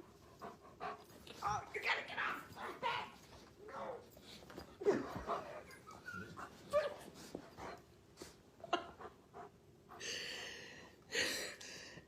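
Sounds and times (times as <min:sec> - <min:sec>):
dog whining and whimpering: 0:04.8 - 0:07.2.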